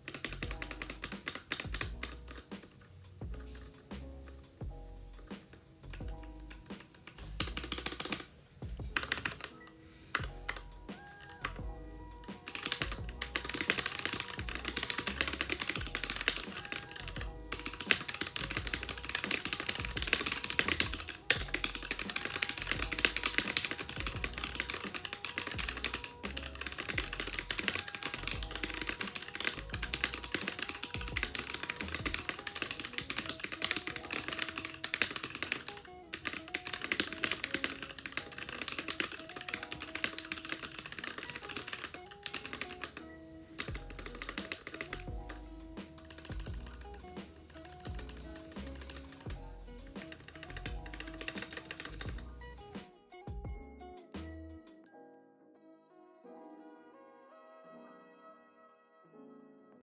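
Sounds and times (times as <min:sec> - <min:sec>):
mechanical keyboard typing: 0:00.0 - 0:03.9, 0:05.4 - 0:52.8
background music with bass: 0:00.3 - 0:09.2, 0:10.1 - 0:13.6, 0:14.4 - 0:19.2, 0:19.8 - 0:24.8, 0:25.5 - 0:29.0, 0:29.6 - 0:30.4, 0:31.0 - 0:32.5, 0:43.6 - 0:54.7.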